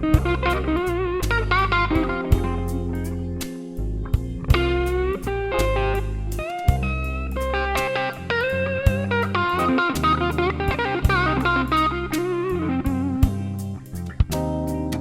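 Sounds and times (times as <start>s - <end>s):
bass and drums: 0.0s - 15.0s
slow blues electric guitar: 0.0s - 15.0s.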